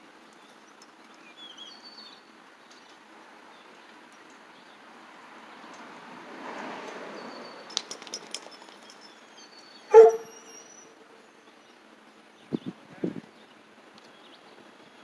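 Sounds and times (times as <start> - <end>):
dog barking: 9.9 - 10.6.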